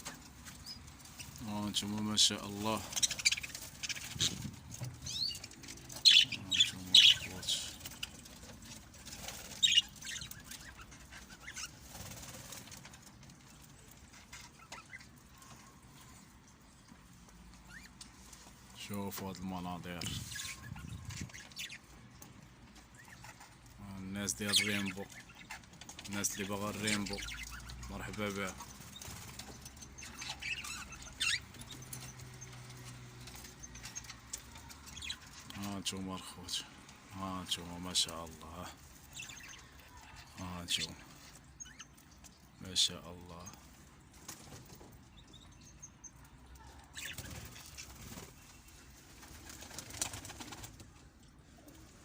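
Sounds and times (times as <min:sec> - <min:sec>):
birds calling: 0:00.0 - 0:50.8.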